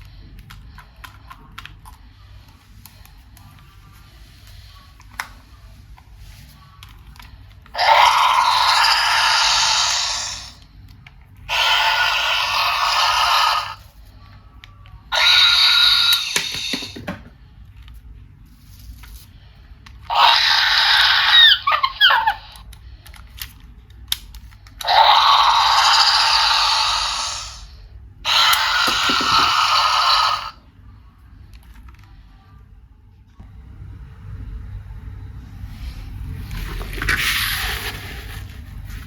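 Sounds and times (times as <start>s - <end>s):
toy dinosaur roars from speaker: 7.8s - 10.6s, 11.5s - 13.9s, 15.1s - 17.0s, 20.1s - 22.6s, 24.8s - 30.6s.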